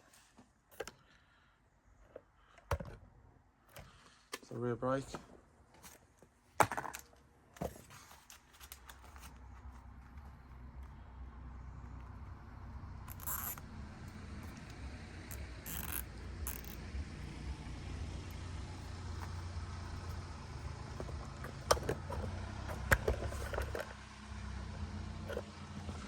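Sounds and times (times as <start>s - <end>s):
low steady rumble: 9.0s - 26.0s
cable tie zipping: 13.1s - 13.7s, 15.3s - 16.9s.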